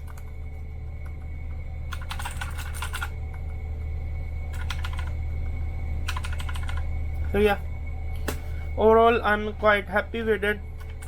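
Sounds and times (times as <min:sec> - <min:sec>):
steady low hum: 0:00.0 - 0:11.0
clicky mechanical keyboard typing: 0:01.9 - 0:03.1, 0:04.6 - 0:05.1, 0:06.1 - 0:06.8.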